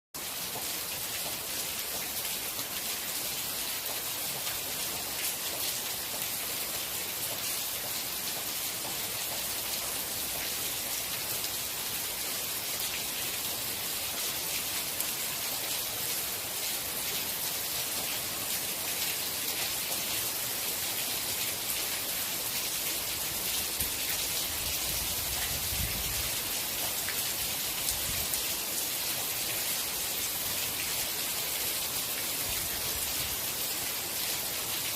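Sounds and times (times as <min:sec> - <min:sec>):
steady rain falling: 0:00.2 - 0:34.9.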